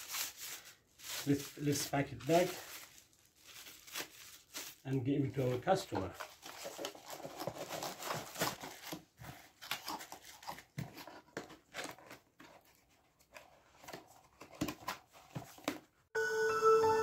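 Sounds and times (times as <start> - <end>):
packaging rustling and crinkling: 0.0 - 15.9.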